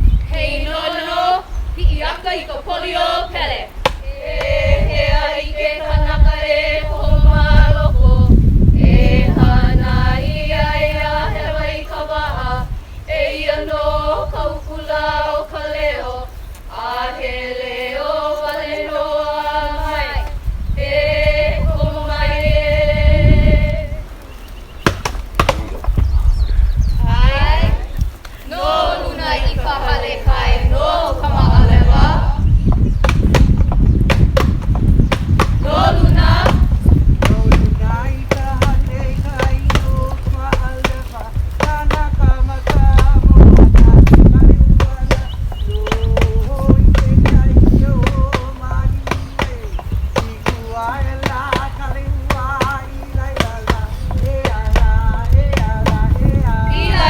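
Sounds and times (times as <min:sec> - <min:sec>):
steady low rumble: 0:00.0 - 0:24.5, 0:25.2 - 0:57.0
voices chanting in unison: 0:00.0 - 0:25.7, 0:26.5 - 0:57.0
sharp drum strikes: 0:24.8 - 0:26.2, 0:31.7 - 0:57.0.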